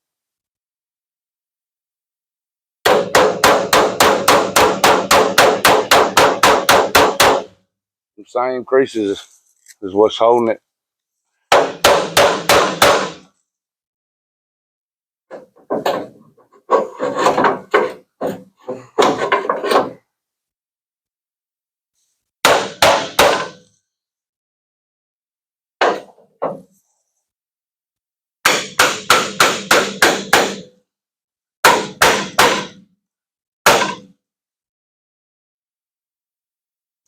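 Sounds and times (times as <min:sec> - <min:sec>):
hammer striking sheet metal: 0:02.9 - 0:07.5, 0:11.5 - 0:13.3, 0:22.4 - 0:23.6, 0:28.4 - 0:30.7, 0:31.6 - 0:32.8, 0:33.6 - 0:34.1.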